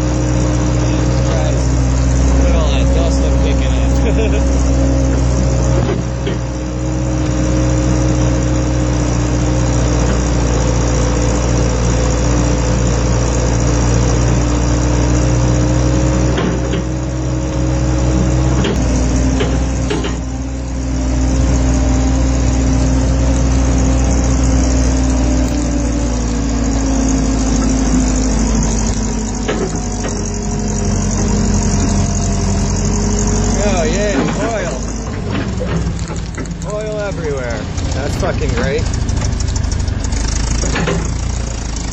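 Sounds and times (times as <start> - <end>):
heavy equipment engine running: 0.0 - 41.9
metal clanks: 33.8 - 41.9.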